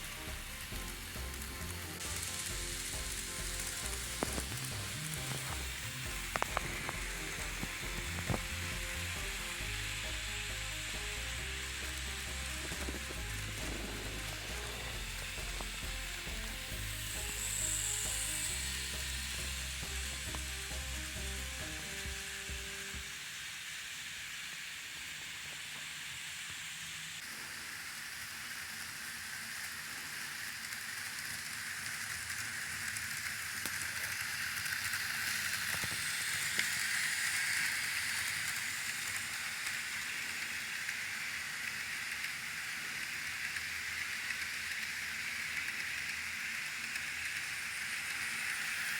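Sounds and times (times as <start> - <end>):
background music: 0.0 - 23.0
model train rattling on track: 0.0 - 48.9.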